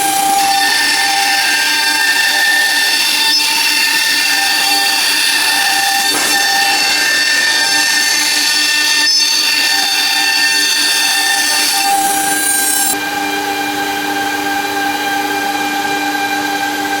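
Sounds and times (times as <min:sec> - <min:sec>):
hiss of wood cutting: 0:00.0 - 0:13.0
router spindle whine: 0:00.0 - 0:17.0.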